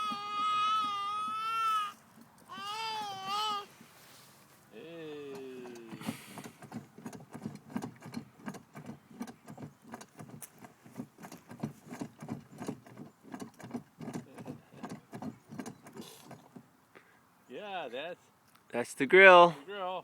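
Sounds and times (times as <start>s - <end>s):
bulldozer rattling and clunking: 5.3s - 16.8s.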